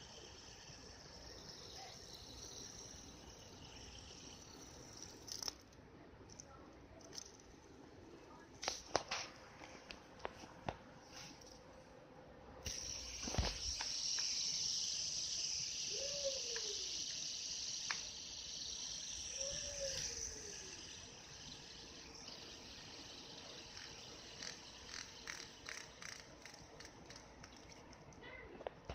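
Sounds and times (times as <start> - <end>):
fidget spinner flick knock: 0.0 - 5.7, 12.6 - 28.1
fidget spinner bearing whirring: 0.0 - 12.0, 12.6 - 28.4.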